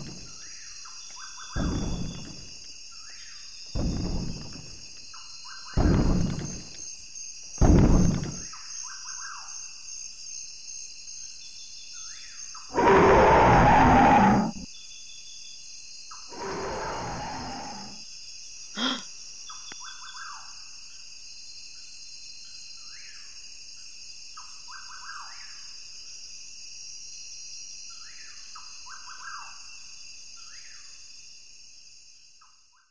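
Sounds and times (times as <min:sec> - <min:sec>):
thud-like burst: 0:03.8 - 0:04.7, 0:05.8 - 0:06.7, 0:07.6 - 0:08.4
dinosaur roars: 0:12.7 - 0:14.7, 0:16.3 - 0:18.0.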